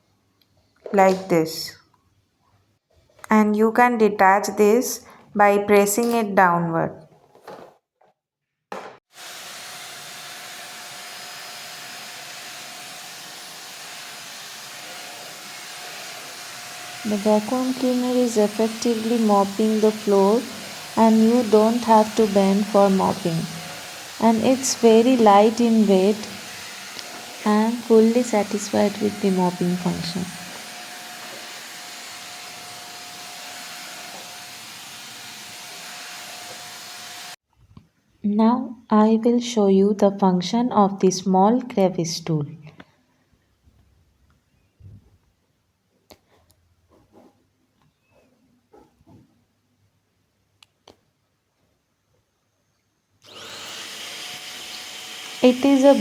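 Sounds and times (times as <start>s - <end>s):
handheld vacuum cleaner motor whirring: 9.1s - 37.4s, 53.2s - 56.0s.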